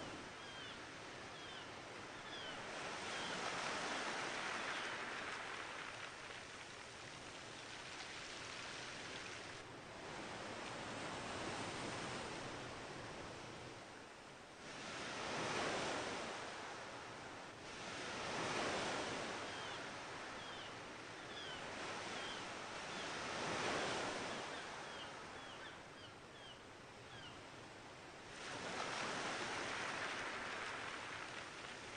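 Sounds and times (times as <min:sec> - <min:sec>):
sea surf washing in: 0:28.3 - 0:31.9.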